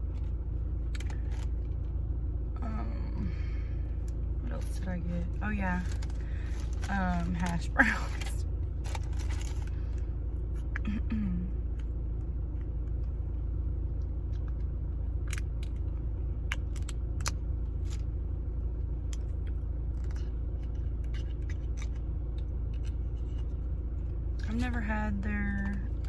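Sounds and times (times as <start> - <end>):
steady low hum: 0.0 - 26.0
food packaging clicks and rustles: 5.8 - 9.8.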